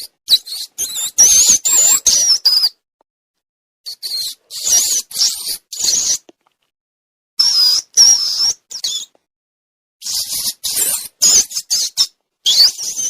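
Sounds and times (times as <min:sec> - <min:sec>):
rodent squeaks: 0:00.0 - 0:02.8, 0:03.9 - 0:06.3, 0:07.4 - 0:09.1, 0:10.0 - 0:13.0.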